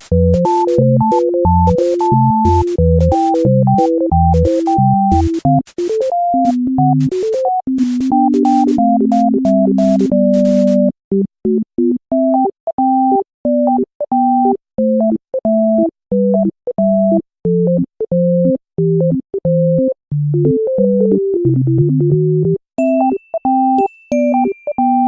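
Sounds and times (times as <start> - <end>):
simple synthesizer tune: 0.0 - 10.9.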